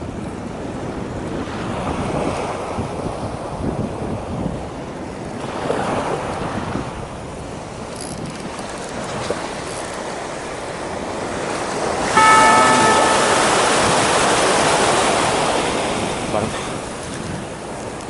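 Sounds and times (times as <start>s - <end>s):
high whistling tone: 12.2s - 14.2s.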